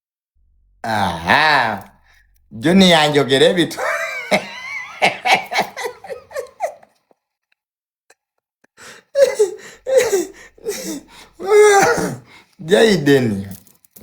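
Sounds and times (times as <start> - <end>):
person laughing: 3.7 - 7.0, 8.8 - 12.2.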